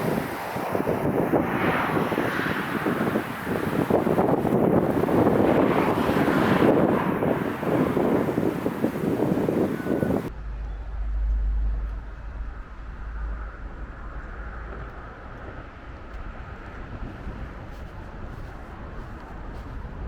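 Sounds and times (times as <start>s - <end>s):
distant jet engines rumbling: 0.0s - 20.0s
wind buffeting microphone: 0.0s - 20.0s
faint whine: 9.2s - 16.6s.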